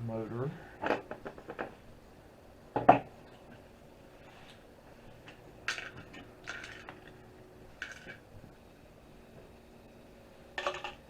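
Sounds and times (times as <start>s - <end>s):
small metal and plastic parts clinking: 5.6s - 7.2s, 7.8s - 8.2s.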